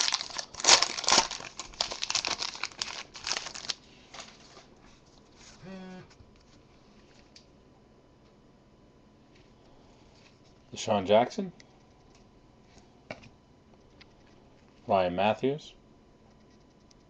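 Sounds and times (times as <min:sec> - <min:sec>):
wrapper crinkling and tearing: 0:00.0 - 0:04.7
person humming briefly: 0:05.5 - 0:06.2.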